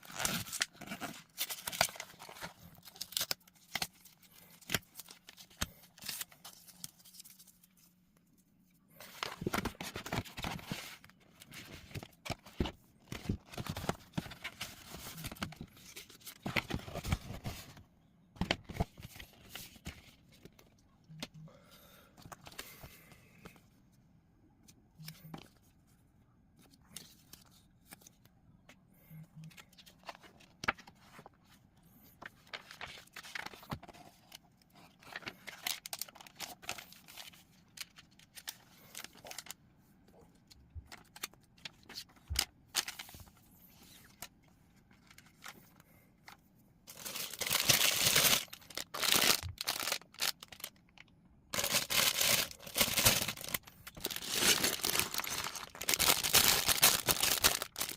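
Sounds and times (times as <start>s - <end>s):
plastic bags crinkling: 46.9s - 57.9s.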